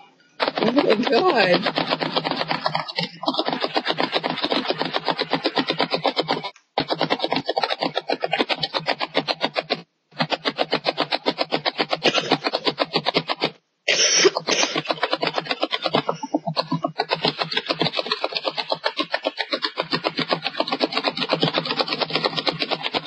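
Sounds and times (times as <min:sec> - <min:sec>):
rapid message alert sounds: 0:00.5 - 0:03.7, 0:15.9 - 0:17.0.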